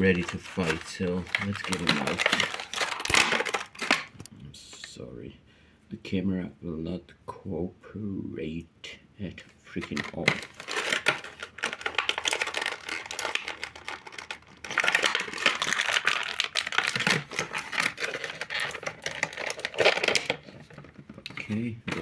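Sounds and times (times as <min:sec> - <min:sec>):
stiff plastic packaging crinkling: 0:00.0 - 0:04.3, 0:09.8 - 0:22.0.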